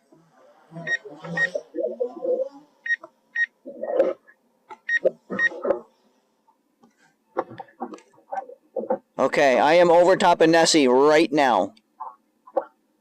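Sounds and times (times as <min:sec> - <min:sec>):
short electronic beeps: 0:00.8 - 0:01.6, 0:02.8 - 0:03.6, 0:04.9 - 0:05.6.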